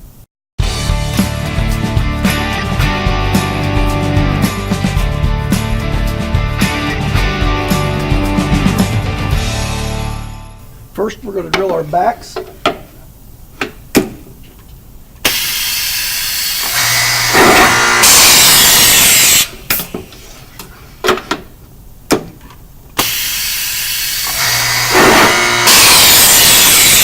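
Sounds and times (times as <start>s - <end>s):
power drill boring holes: 15.3s - 19.5s, 23.0s - 27.0s.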